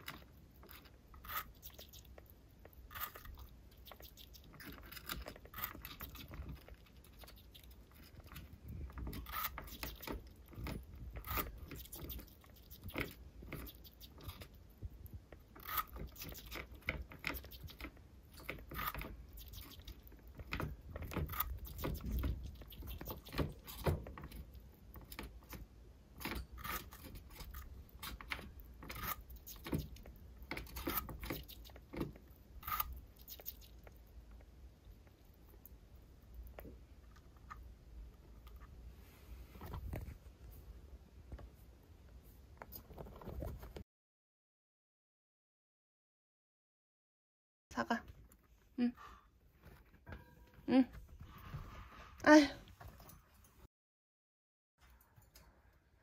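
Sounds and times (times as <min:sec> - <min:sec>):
small animal chewing apple: 0:00.0 - 0:25.7, 0:26.5 - 0:37.4.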